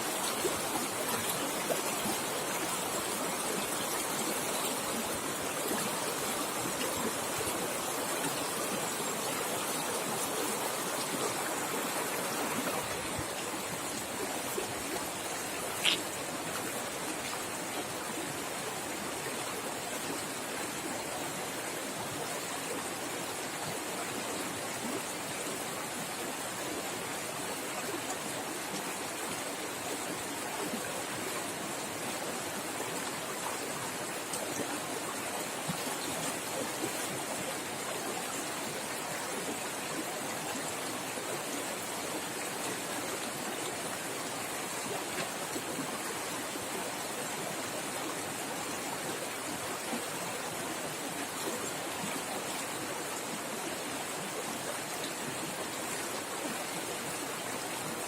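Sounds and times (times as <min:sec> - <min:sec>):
river water rushing: 0:00.0 - 0:58.0.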